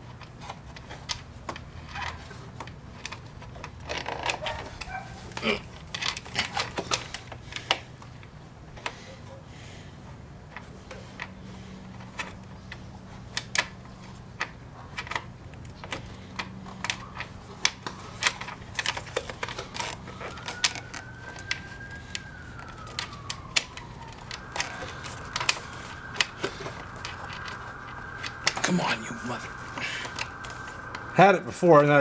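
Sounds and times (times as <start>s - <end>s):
faint tone: 20.2s - 32.0s.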